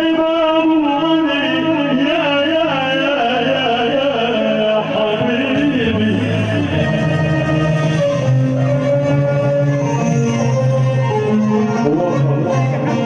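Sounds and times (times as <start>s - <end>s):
wavering melody over bass notes: 4.6s - 13.0s.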